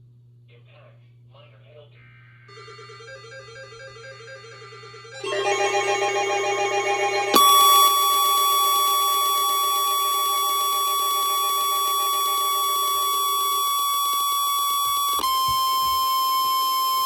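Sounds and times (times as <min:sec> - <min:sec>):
steady electronic alert tone: 0:02.5 - 0:15.9.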